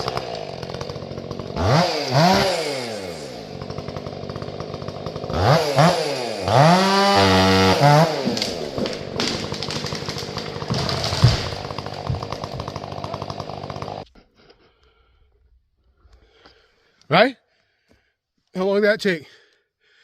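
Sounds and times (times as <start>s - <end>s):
chainsaw running rough: 0.0s - 14.1s.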